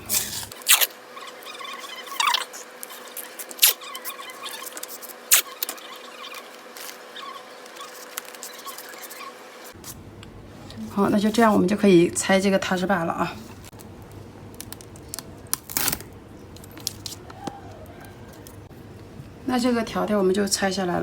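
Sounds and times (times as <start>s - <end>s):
sharp clicks and squeaks: 0.5s - 9.8s.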